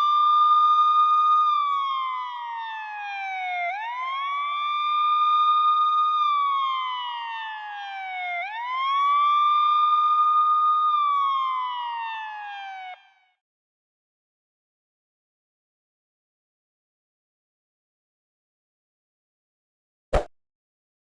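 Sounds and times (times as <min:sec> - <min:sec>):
ambulance siren wailing: 0:00.0 - 0:13.3.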